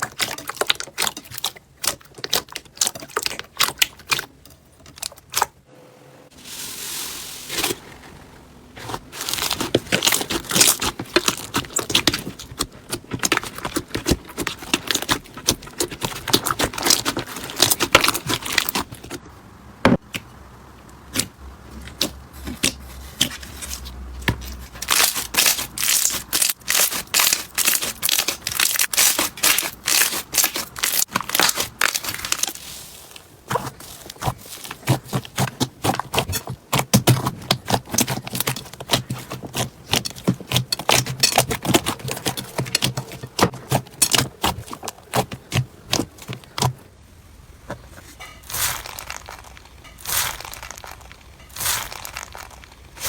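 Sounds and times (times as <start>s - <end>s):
slime crackling and popping: 9.1s - 19.1s, 24.8s - 32.8s, 33.5s - 46.7s, 48.4s - 53.0s.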